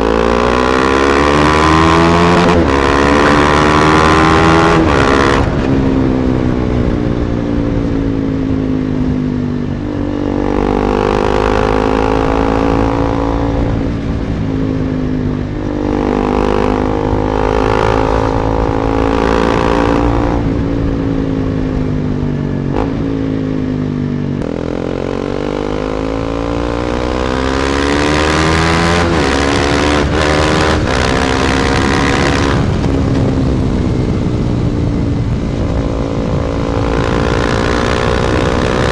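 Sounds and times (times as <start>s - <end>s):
motorcycle engine revving: 0.0s - 38.9s
wind noise on microphone: 0.0s - 38.9s.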